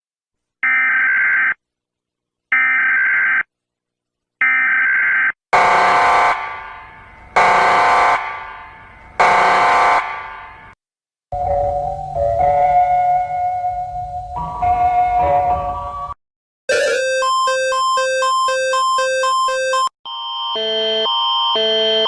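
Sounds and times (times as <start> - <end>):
buzzing alarm blasts: 5.6 - 10.8, 16.7 - 22.0.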